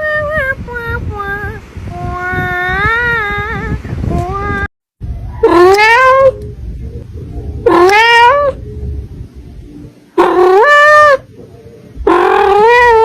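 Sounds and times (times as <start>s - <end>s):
cat meowing loudly: 5.4s - 6.4s, 7.7s - 8.6s, 10.2s - 11.2s, 12.1s - 13.0s.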